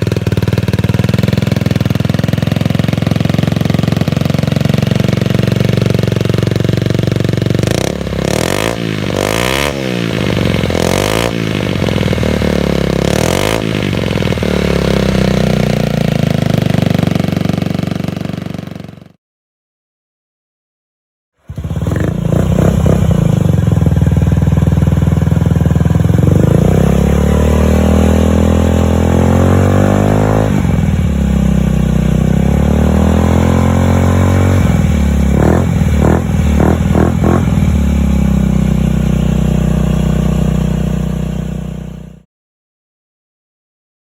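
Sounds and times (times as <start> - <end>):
scooter engine revving: 0.0 - 19.1, 21.4 - 42.3.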